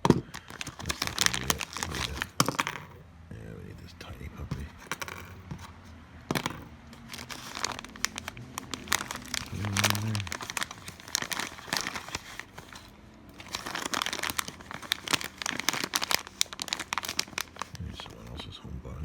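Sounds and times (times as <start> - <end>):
plastic packaging crinkling: 0.0 - 2.8, 6.3 - 18.2.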